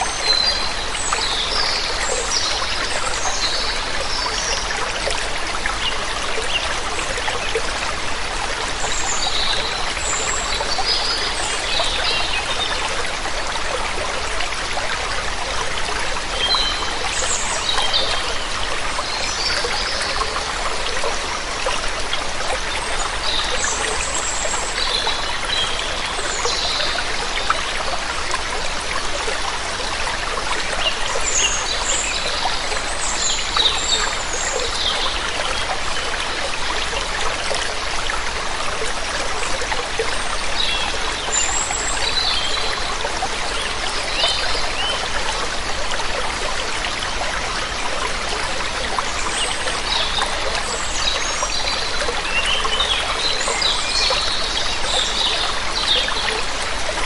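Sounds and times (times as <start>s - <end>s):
rushing water: 0.0s - 57.0s.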